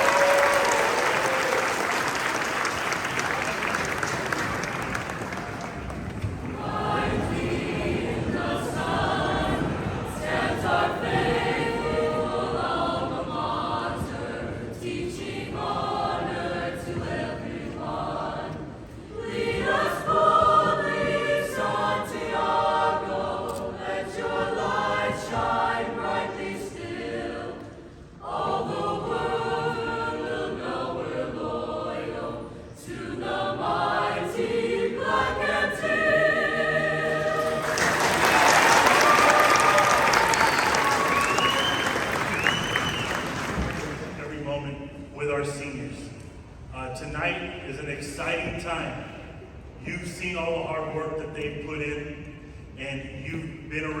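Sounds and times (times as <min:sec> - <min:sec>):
choir singing: 0:06.2 - 0:44.2.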